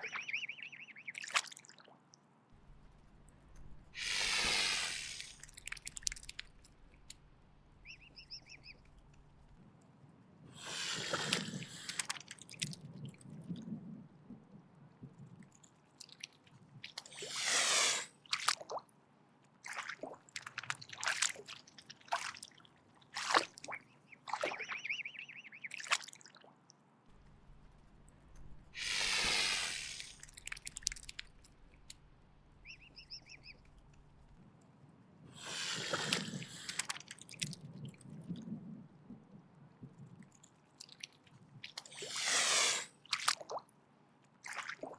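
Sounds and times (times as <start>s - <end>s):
swan hissing: 3.6s - 7.0s, 10.6s - 12.1s, 17.1s - 18.2s, 27.2s - 33.8s, 35.4s - 36.9s, 41.9s - 43.0s.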